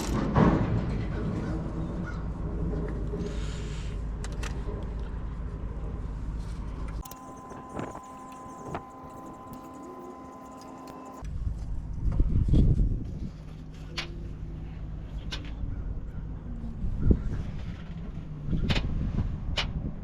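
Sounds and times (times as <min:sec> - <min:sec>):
low machine hum: 0:07.0 - 0:11.2
sharp clicks: 0:07.0 - 0:11.2.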